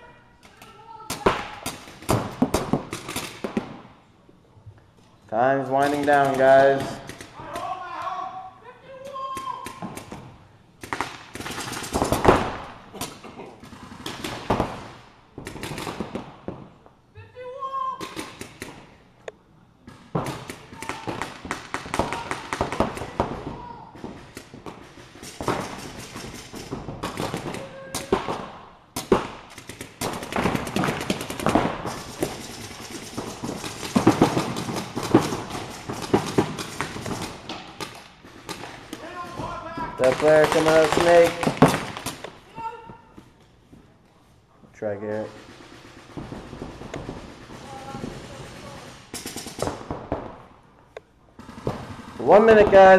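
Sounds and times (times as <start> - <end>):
paintball markers firing: 19.9 - 42.4.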